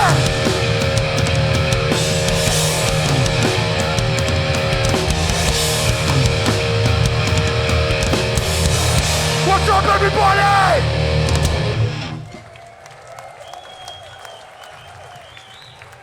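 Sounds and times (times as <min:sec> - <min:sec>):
drums hitting: 0:00.0 - 0:11.9
distorted electric guitars: 0:00.0 - 0:12.4.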